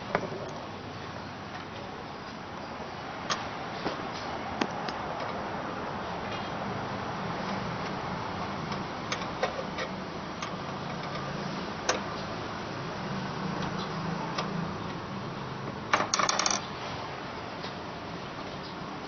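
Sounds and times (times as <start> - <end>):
clicks and taps of fan parts: 3.3 - 5.4, 7.4 - 12.4, 13.5 - 15.0.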